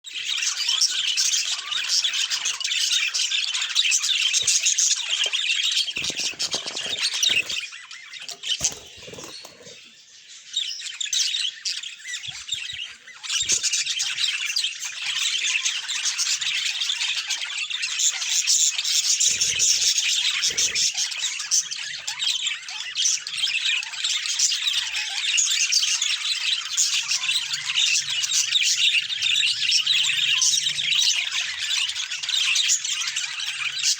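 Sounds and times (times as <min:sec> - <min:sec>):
budgerigars chirping and chattering: 0:00.1 - 0:33.9.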